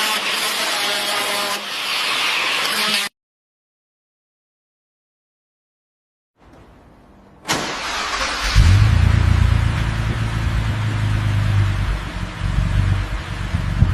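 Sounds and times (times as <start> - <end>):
engine cranking: 7.5 - 8.9
car engine running: 8.4 - 13.9.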